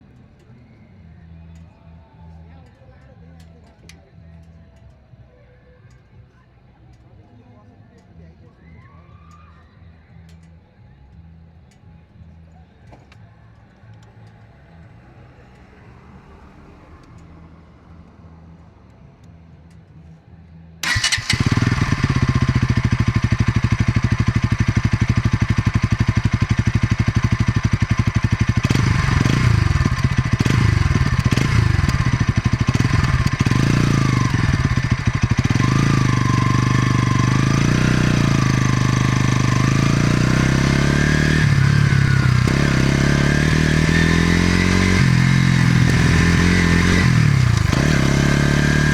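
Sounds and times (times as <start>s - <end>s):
motorcycle engine starting and revving: 20.8s - 48.9s.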